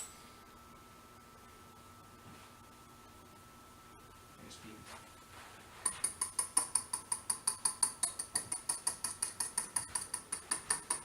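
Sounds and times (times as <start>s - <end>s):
whisk tapping metal bowl: 5.9s - 11.0s.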